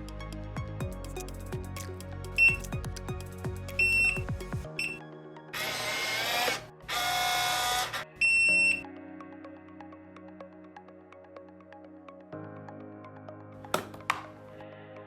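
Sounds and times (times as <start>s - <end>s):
background music: 0.0s - 15.0s
electronic lock beep: 3.8s - 4.2s, 4.8s - 5.0s, 8.2s - 8.8s.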